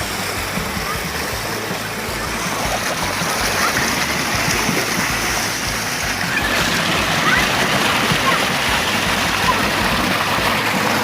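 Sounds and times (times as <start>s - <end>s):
stream water running: 0.0s - 11.0s.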